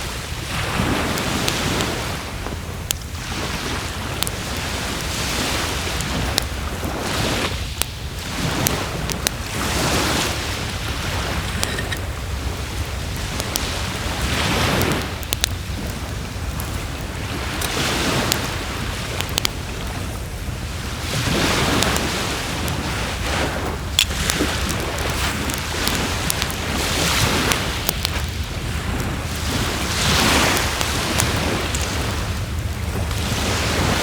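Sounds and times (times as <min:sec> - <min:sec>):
waves breaking on shore: 0:00.0 - 0:34.0
wood fire crackling and popping: 0:00.0 - 0:34.0.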